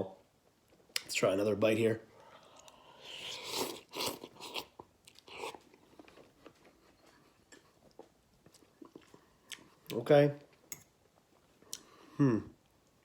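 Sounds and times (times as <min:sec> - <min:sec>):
chewing with mouth clicks: 0:02.5 - 0:11.9
person slurping noodles: 0:02.6 - 0:04.7.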